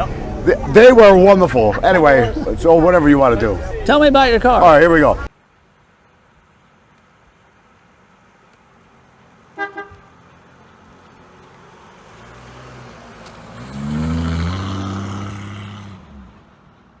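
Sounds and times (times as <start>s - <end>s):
car engine accelerating: 8.8s - 17.0s.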